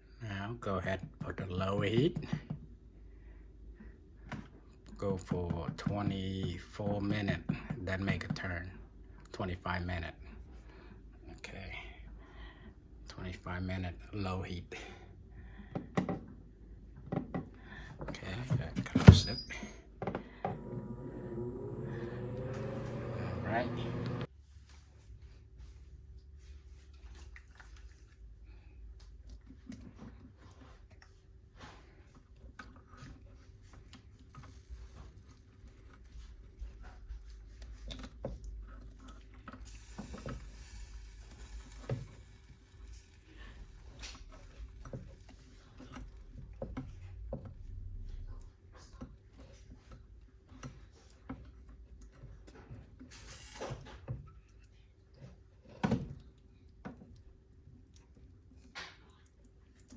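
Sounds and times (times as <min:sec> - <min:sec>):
low steady hum: 0:20.5 - 0:24.3
brief hiss: 0:39.7 - 0:44.5.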